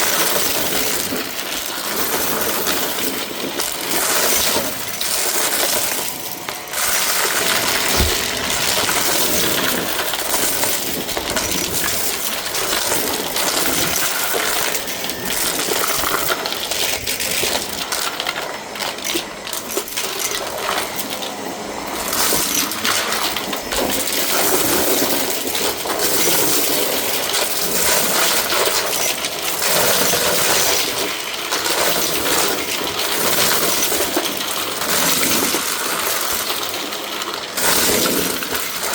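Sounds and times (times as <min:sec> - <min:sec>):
grit rattling through vacuum: 0:00.0 - 0:17.9
vacuum cleaner running: 0:00.0 - 0:38.9.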